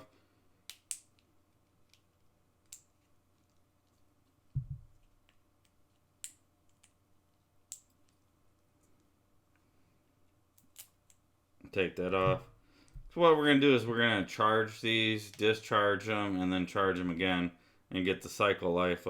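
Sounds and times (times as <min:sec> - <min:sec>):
low thump: 0:04.6 - 0:04.9.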